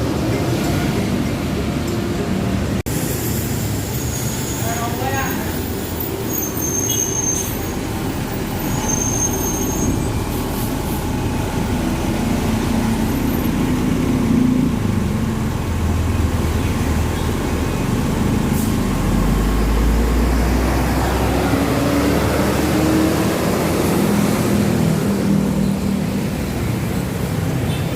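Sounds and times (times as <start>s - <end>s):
bus engine: 0.0s - 27.9s
traffic: 0.0s - 27.9s.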